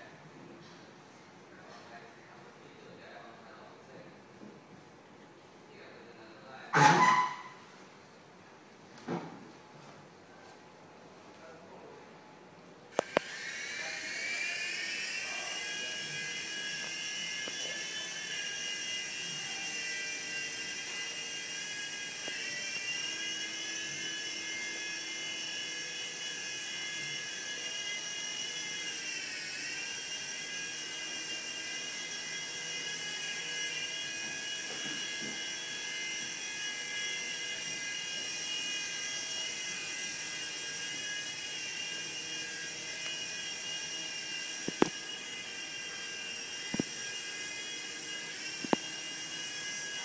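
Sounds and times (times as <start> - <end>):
toy helicopter motor whine: 12.9 - 50.0.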